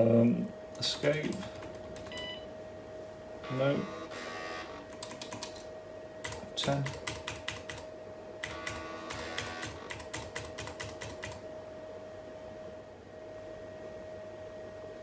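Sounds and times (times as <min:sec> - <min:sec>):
laptop keys pressed rapidly: 0:01.0 - 0:02.3, 0:04.9 - 0:11.4.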